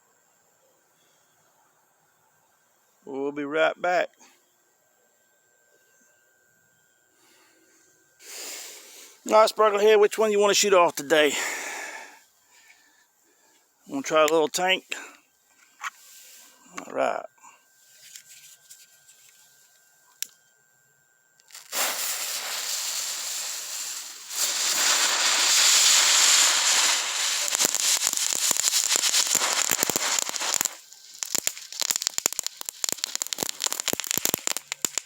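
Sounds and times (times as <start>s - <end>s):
firework crackling pops: 21.4s - 35.0s
firework spraying sparks: 21.4s - 35.0s.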